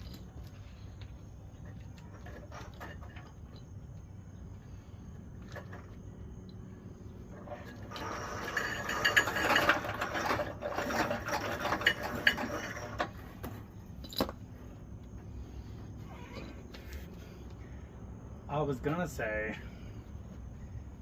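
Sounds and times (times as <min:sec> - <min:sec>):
winch drum rattling: 0:07.1 - 0:14.5.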